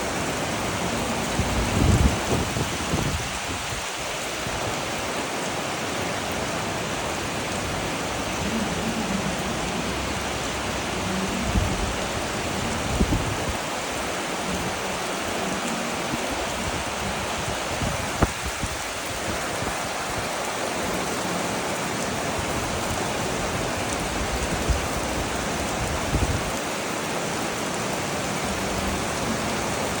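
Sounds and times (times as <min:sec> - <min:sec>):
heavy rain pouring: 0:00.0 - 0:30.0.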